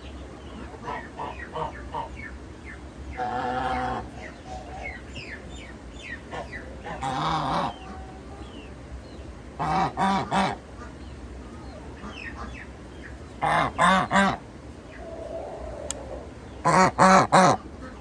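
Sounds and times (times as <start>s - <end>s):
fowl drawn-out calls: 0.6s - 2.2s, 3.1s - 5.5s, 6.2s - 8.8s, 9.6s - 11.0s, 13.4s - 18.0s.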